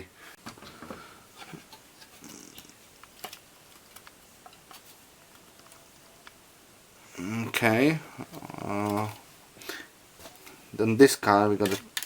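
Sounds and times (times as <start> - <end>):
hand tools clicking and tapping: 11.6 - 12.0.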